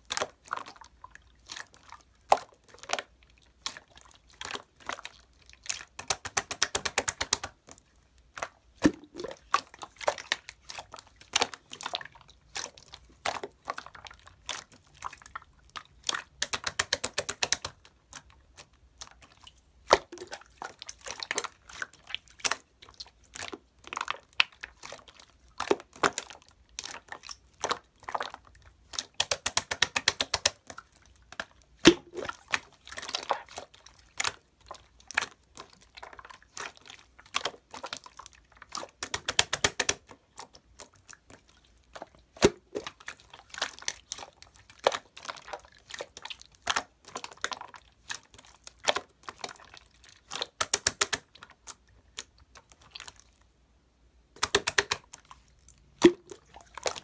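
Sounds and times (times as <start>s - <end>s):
crinkling and crunching: 30.0s - 53.5s, 54.4s - 57.0s.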